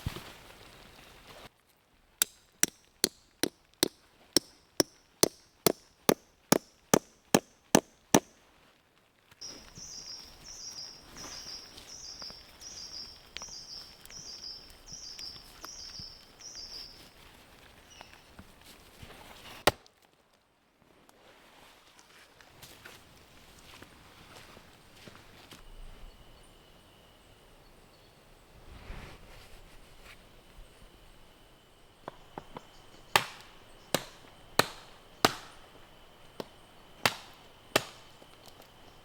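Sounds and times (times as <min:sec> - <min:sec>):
tool striking wood: 0:02.2 - 0:08.3, 0:32.1 - 0:35.6, 0:36.4 - 0:38.7
bird chirping: 0:09.4 - 0:17.1.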